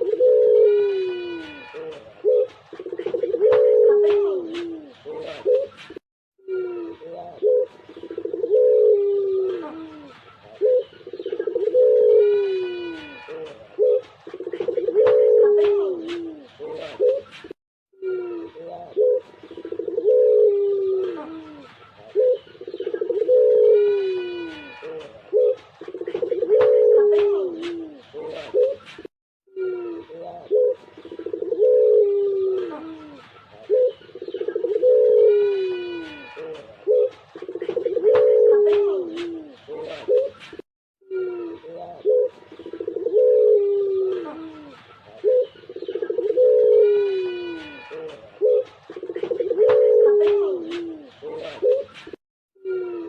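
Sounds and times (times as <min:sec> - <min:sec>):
dove cooing: 0:00.0 - 0:17.4, 0:18.0 - 0:29.0, 0:29.6 - 0:40.5, 0:41.1 - 0:53.0.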